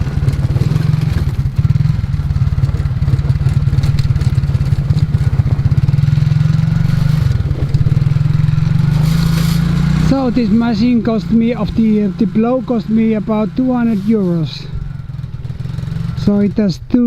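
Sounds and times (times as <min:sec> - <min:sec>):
quad bike engine running: 0:00.0 - 0:17.0.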